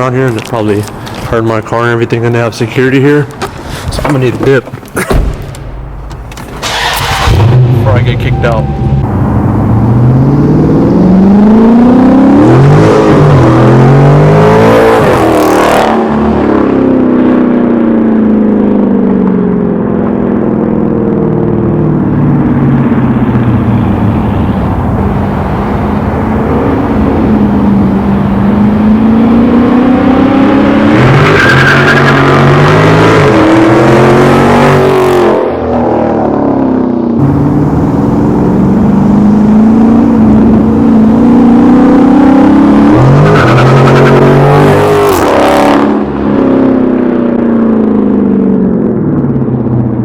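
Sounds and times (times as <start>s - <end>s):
loud car engine revving: 6.6s - 18.6s, 21.1s - 48.9s.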